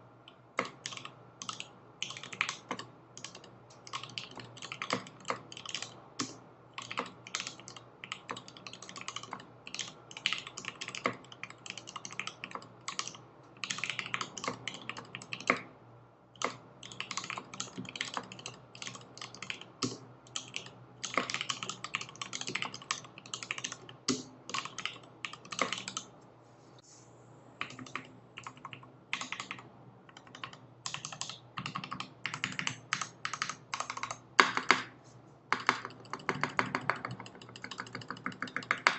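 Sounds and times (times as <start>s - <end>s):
mechanical keyboard typing: 0.6s - 15.6s, 16.4s - 26.1s, 27.6s - 34.9s, 35.5s - 38.9s.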